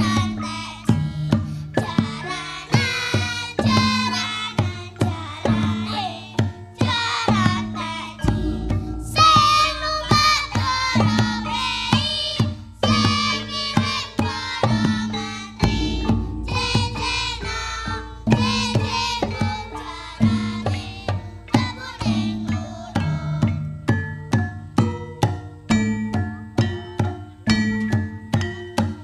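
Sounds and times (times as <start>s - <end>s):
person singing wavering melody: 0.0s - 23.7s
hand-drum strokes: 0.0s - 29.0s
struck metal notes: 7.2s - 22.9s.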